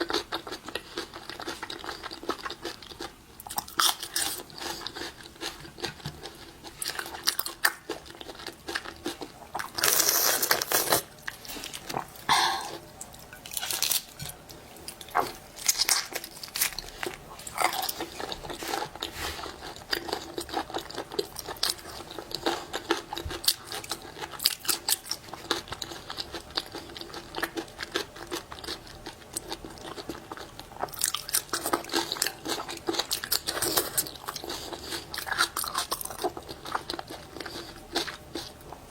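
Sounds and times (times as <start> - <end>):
crunchy bites and chewing: 13.5 - 38.7.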